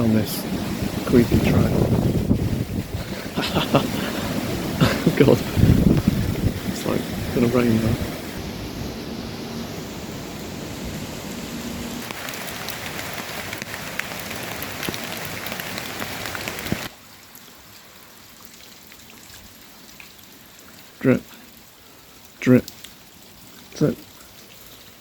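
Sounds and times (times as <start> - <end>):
rain falling: 0.0 - 25.0
drips: 2.1 - 8.4, 12.0 - 25.0.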